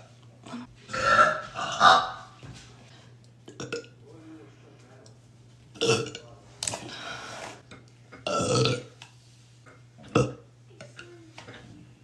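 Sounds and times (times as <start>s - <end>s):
woman burping: 0.5s - 2.2s, 8.3s - 8.9s.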